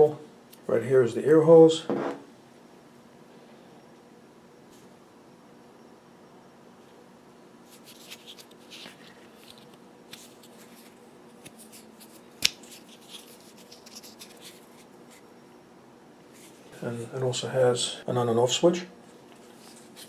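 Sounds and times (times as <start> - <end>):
plastic device rustles and clicks: 7.7 - 14.9.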